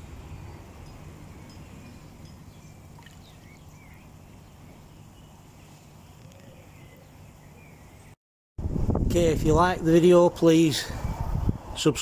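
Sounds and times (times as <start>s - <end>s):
water trickling: 0.7s - 3.7s
bird chirps: 1.3s - 8.2s.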